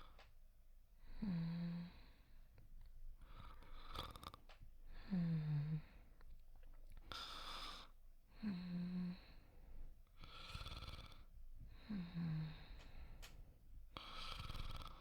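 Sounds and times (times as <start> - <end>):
person snoring: 14.0 - 15.0.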